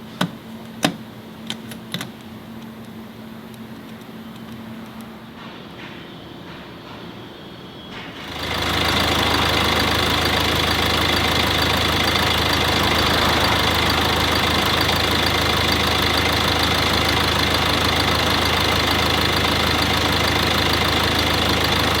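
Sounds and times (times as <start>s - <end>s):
car engine idling: 8.2s - 22.0s.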